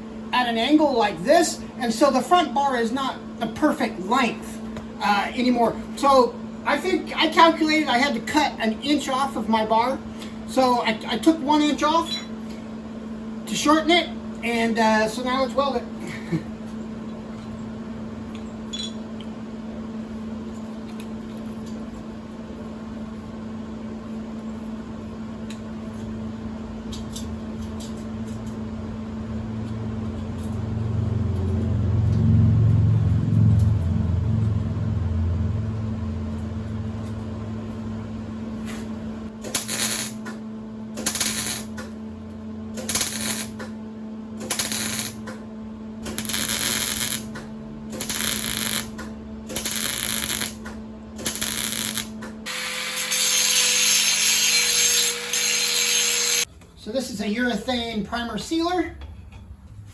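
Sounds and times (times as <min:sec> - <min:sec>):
welder electrical hum: 0:00.0 - 0:59.9
low rumble: 0:30.2 - 0:38.5
welding crackles: 0:39.4 - 0:40.3, 0:41.0 - 0:41.9, 0:42.8 - 0:43.7, 0:44.4 - 0:45.4, 0:46.1 - 0:56.5.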